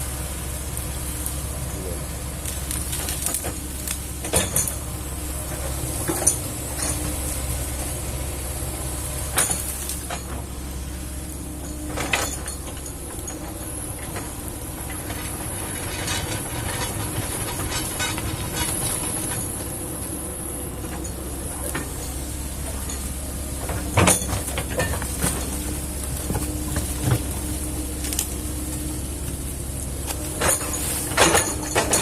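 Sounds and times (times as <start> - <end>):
excavator engine hum: 0.0 - 32.0
metallic knocks and clanks: 4.2 - 4.9, 11.6 - 19.8, 30.2 - 32.0.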